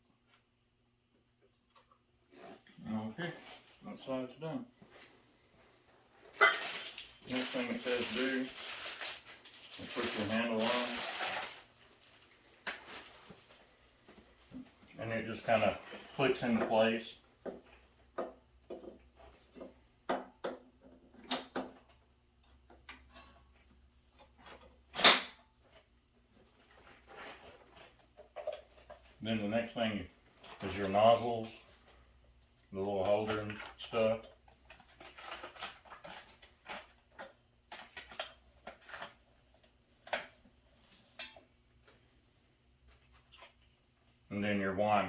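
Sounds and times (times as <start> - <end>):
plastic parts knocking and clicking: 17.4 - 23.0.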